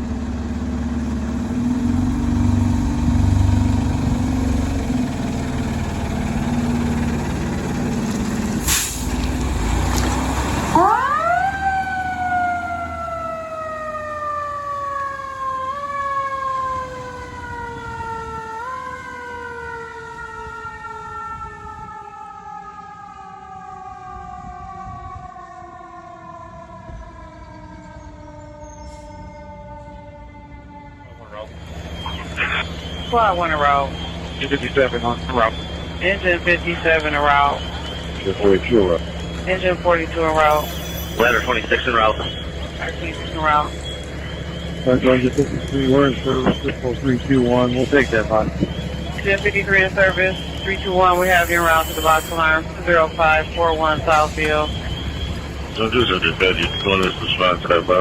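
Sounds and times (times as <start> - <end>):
diesel engine running: 0.0 - 14.2, 31.3 - 58.0
air hiss: 8.6 - 9.2
fire engine siren winding: 10.7 - 58.0.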